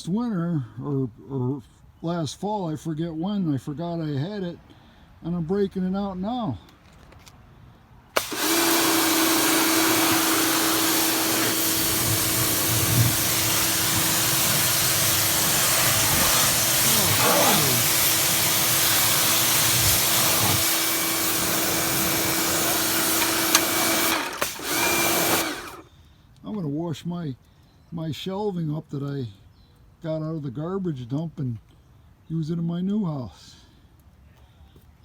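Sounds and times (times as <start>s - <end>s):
water spray rushing: 8.2s - 25.8s
pressure washer motor hum: 8.2s - 25.9s.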